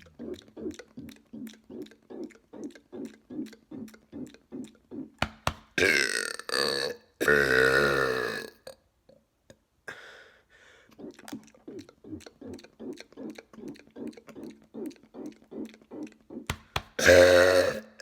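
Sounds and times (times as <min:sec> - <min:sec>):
soft rhythmic mouth sounds: 0:00.0 - 0:18.0
man belching: 0:05.8 - 0:08.6, 0:17.0 - 0:18.0.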